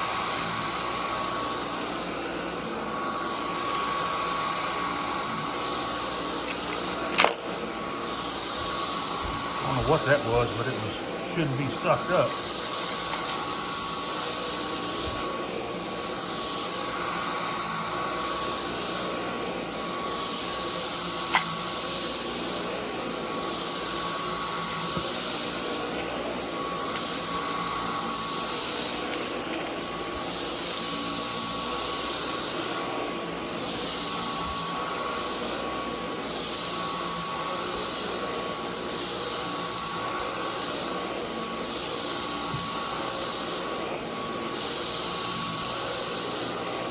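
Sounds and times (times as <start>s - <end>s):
cordless vacuum running: 0.0s - 46.9s
sharp click: 21.3s - 21.6s.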